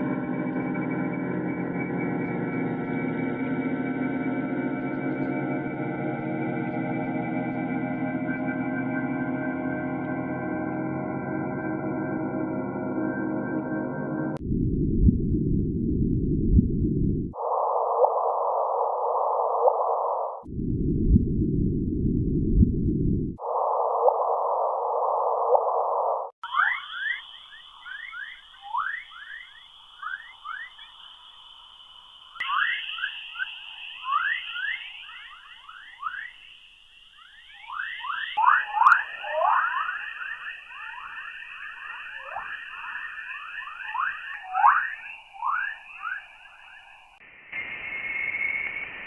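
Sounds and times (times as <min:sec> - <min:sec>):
steady high tone: 0:00.0 - 0:14.4, 0:26.4 - 0:47.8
quick rising chirps: 0:26.4 - 0:49.0
higher hiss with steady tone: 0:26.6 - 0:38.1, 0:38.9 - 0:49.0.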